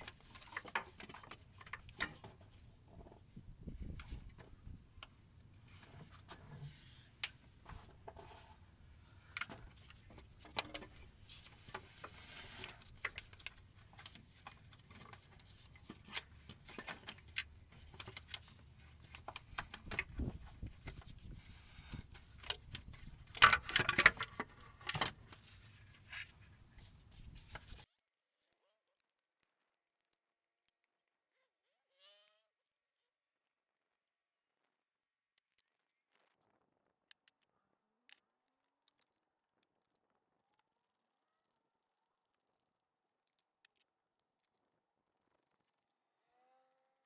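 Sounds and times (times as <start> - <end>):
hand tools clinking: 0.0 - 2.5
short hiss: 11.0 - 12.9.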